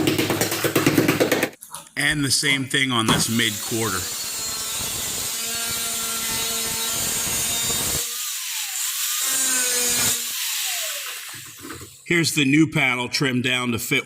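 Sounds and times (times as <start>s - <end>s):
power tool cutting sheet metal: 3.1s - 12.0s.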